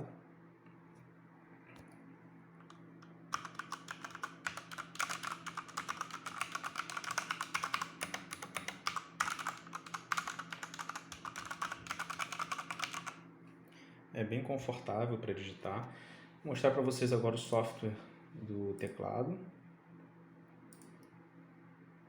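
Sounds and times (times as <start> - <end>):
mechanical keyboard key clacks: 3.4 - 13.2.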